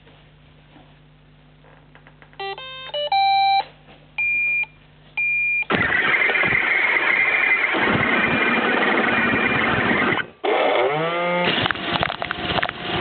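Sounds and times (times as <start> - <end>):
high beeps: 2.4 - 5.7.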